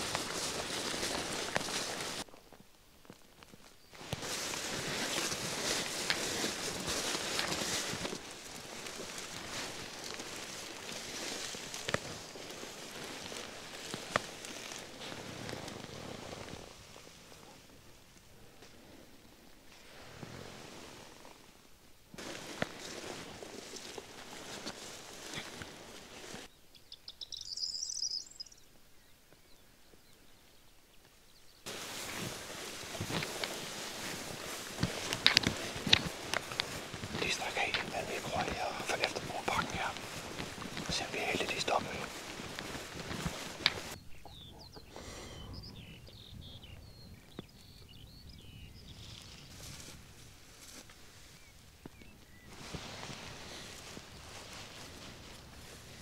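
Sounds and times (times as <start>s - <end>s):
outdoor rustling: 0.0s - 46.0s, 46.6s - 56.0s
songbirds chirping: 3.0s - 20.4s, 21.2s - 50.0s, 50.6s - 56.0s
songbird twittering: 26.5s - 30.7s, 43.7s - 49.5s, 51.3s - 54.2s.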